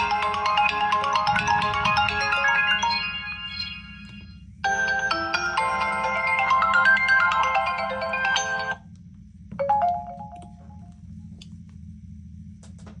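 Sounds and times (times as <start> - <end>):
phone ringtone melody: 0.0 - 8.8, 9.6 - 10.8.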